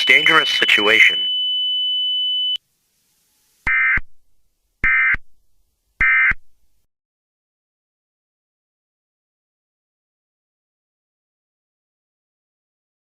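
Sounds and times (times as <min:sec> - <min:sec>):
digital data bursts: 0:00.0 - 0:01.3
steady high tone: 0:00.0 - 0:01.3.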